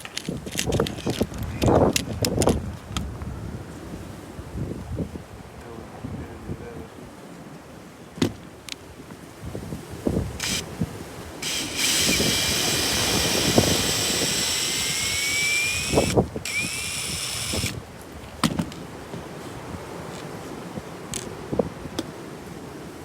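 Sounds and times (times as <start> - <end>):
power drill driving a screw: 10.3 - 10.7, 11.4 - 17.8.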